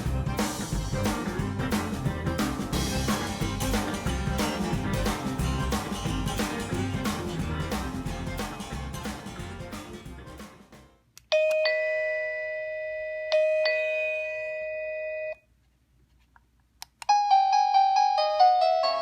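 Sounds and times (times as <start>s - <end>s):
background music: 0.0s - 10.9s
doorbell ding-dong chime: 11.3s - 15.4s, 17.1s - 19.0s
doorbell chime melody: 11.4s - 15.4s, 17.1s - 19.0s
click: 16.3s - 17.1s.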